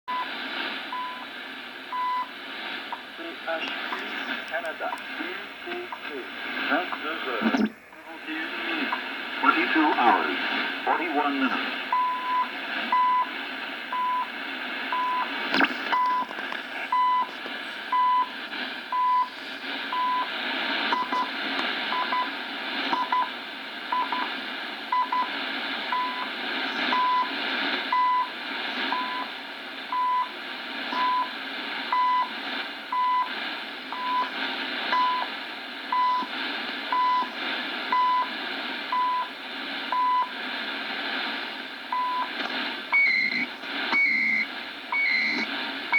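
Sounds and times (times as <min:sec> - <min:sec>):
radio static hiss: 0:00.1 - 0:45.9
static crack: 0:00.1 - 0:45.9
time signal beeps: 0:43.0 - 0:43.4, 0:44.0 - 0:45.5.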